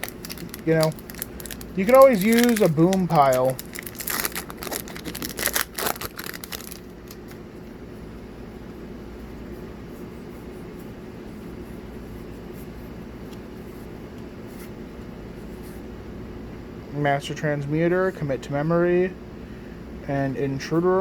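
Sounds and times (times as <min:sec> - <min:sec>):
cards being handled: 0:00.0 - 0:07.4
wrapper crinkling: 0:00.0 - 0:07.4
low background hum: 0:00.0 - 0:21.0.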